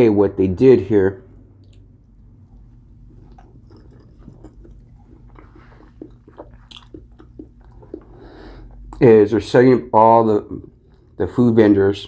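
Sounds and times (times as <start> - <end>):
low steady hum: 0.0 - 12.0
man chewing food: 1.6 - 9.0, 10.5 - 11.2.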